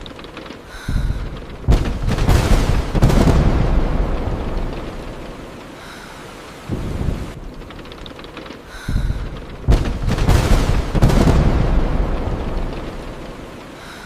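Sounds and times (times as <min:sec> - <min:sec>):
steady rain: 0:00.0 - 0:14.0
low thunder rumble: 0:00.7 - 0:06.0, 0:06.6 - 0:14.0
sharp thunderclap: 0:00.9 - 0:05.5, 0:06.7 - 0:07.7, 0:08.9 - 0:13.6.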